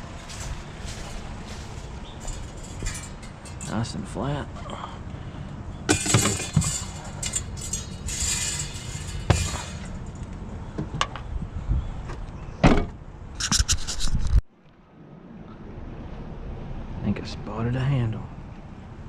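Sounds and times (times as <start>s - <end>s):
crib frame knocking and clattering: 5.9s - 7.4s.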